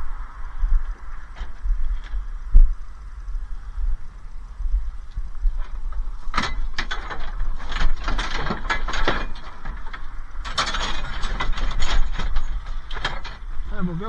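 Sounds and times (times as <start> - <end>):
steady low rumble: 0.0 - 14.0
scrap knocking and clattering: 5.6 - 14.0.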